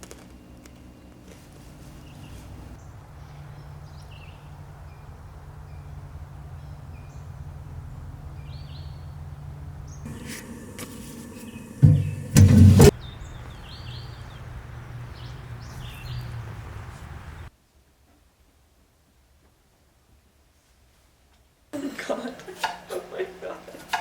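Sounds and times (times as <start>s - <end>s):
steady low hum: 10.1s - 12.9s.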